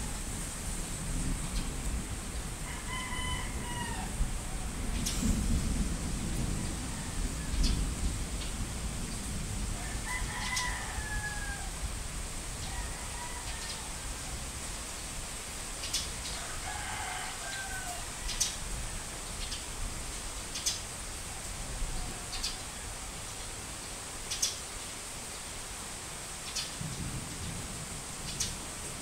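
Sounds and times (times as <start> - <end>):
rain hiss: 0.0 - 29.0
roosters crowing: 2.6 - 5.2, 6.4 - 7.8, 9.8 - 12.0, 12.6 - 14.3, 16.2 - 19.2, 21.3 - 23.4.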